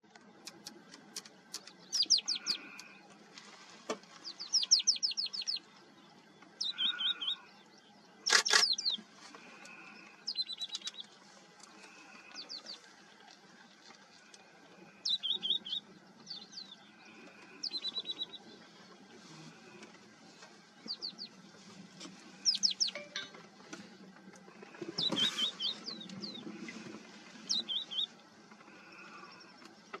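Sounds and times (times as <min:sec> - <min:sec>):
bird calling: 0:01.5 - 0:03.0, 0:06.6 - 0:07.5.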